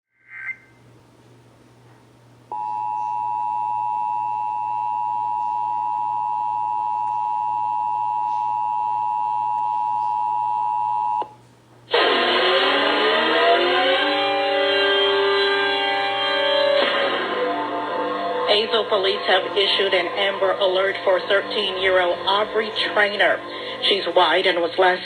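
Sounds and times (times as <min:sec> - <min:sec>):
loud sound: 0:11.9 - 0:23.8.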